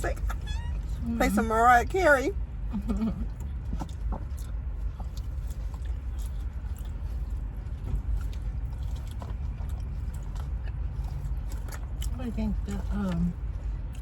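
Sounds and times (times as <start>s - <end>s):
steady low hum: 0.0s - 14.0s
person chewing: 3.1s - 14.0s.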